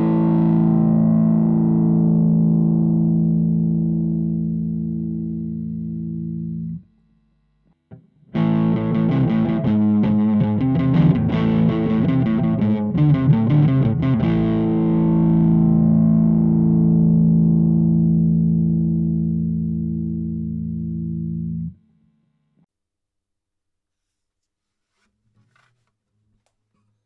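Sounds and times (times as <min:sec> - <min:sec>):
distorted electric guitar chords: 0:00.0 - 0:06.8, 0:07.9 - 0:21.9.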